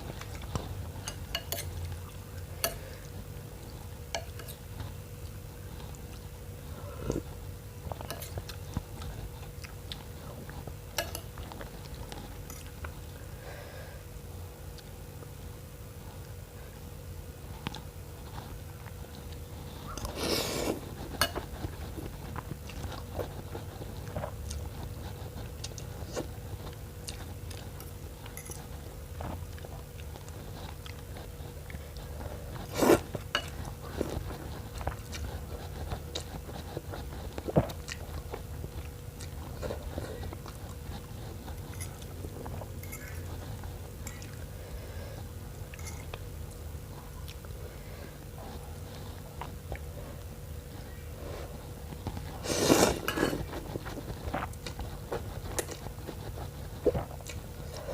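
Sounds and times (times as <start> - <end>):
steady low hum: 0.0 - 57.9
person chewing and biting: 18.8 - 44.5, 51.8 - 57.9.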